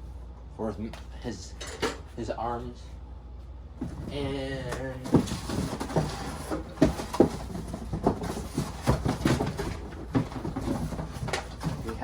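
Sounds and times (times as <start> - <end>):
objects knocking in cardboard box: 3.8 - 12.0.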